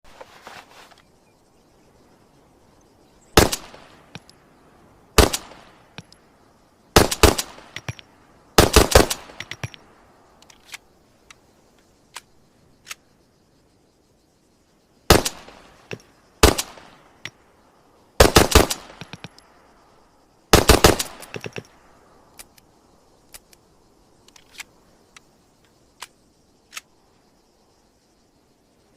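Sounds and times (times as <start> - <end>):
pistol shots: 3.4 - 4.0, 5.2 - 5.7, 7.0 - 8.0, 8.6 - 9.6, 15.1 - 15.6, 16.4 - 16.9, 18.2 - 19.0, 20.5 - 21.4.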